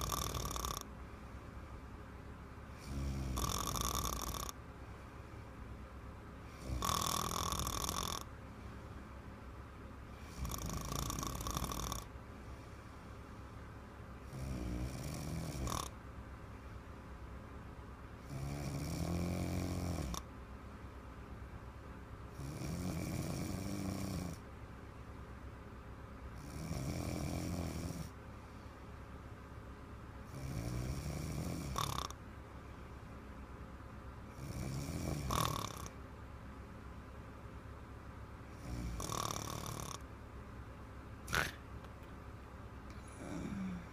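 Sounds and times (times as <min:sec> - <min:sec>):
girl snoring: 0:00.0 - 0:00.9, 0:02.8 - 0:04.6, 0:06.5 - 0:08.3, 0:10.2 - 0:12.1, 0:14.3 - 0:15.9, 0:18.3 - 0:20.2, 0:22.4 - 0:24.4, 0:30.4 - 0:32.1, 0:34.4 - 0:35.9, 0:38.6 - 0:40.0, 0:41.3 - 0:41.6, 0:43.0 - 0:43.9.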